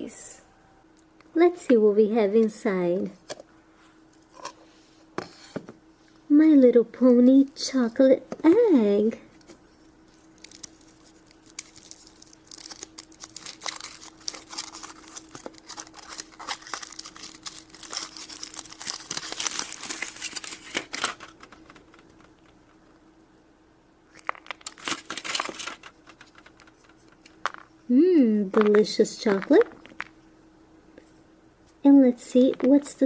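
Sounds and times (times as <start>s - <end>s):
foil wrapper crinkling: 10.1s - 22.6s, 24.1s - 27.7s.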